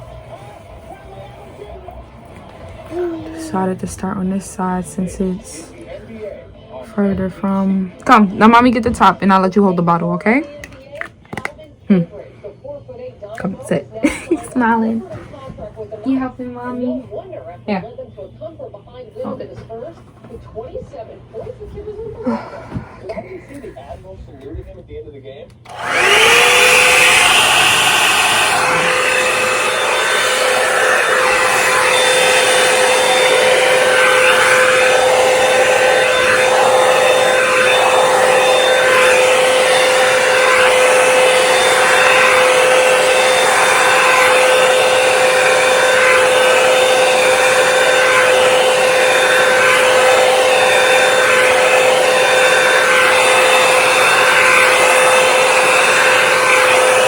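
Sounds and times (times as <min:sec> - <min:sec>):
hair dryer running: 0:00.0 - 0:06.2, 0:07.1 - 0:10.3, 0:13.4 - 0:15.2, 0:25.6 - 0:57.0.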